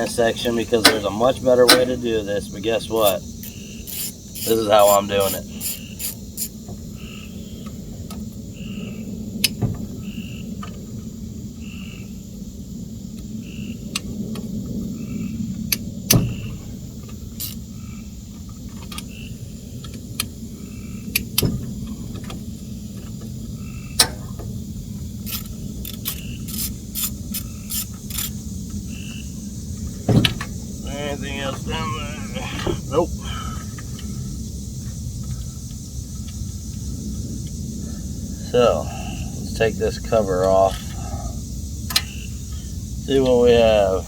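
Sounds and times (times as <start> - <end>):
hand tools clicking on metal: 0.0 - 2.1, 3.0 - 6.6, 17.4 - 17.6, 25.2 - 28.4
frogs calling: 0.0 - 44.0
steady low hum: 0.0 - 44.0.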